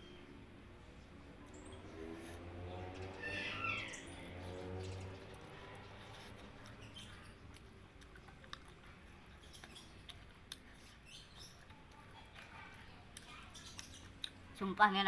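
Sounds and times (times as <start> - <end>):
chewing food: 4.0 - 14.6
wet mouth clicks: 6.0 - 11.0.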